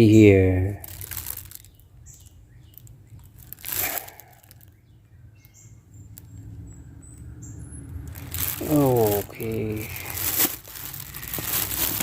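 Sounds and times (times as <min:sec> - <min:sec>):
packaging rustling and crinkling: 0:00.8 - 0:04.8, 0:07.9 - 0:12.0.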